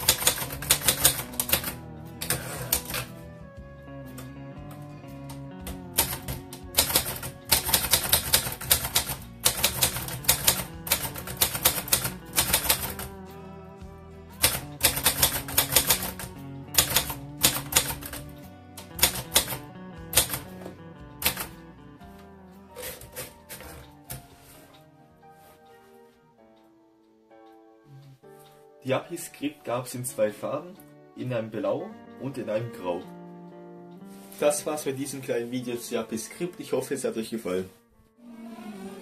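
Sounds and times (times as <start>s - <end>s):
typewriter key strikes: 0.0s - 3.1s, 5.6s - 13.1s, 14.4s - 20.6s.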